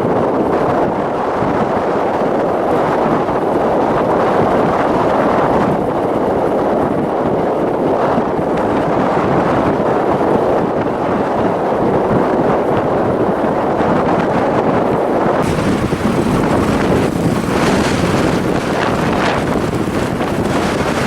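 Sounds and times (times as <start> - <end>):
blizzard wind rumbling: 0.0 - 21.0
high hiss: 15.4 - 19.4.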